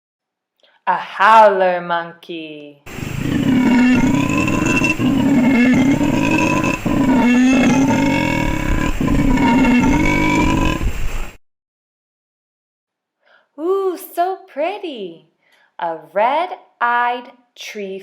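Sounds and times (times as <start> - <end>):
howler monkey howling: 3.0 - 10.9.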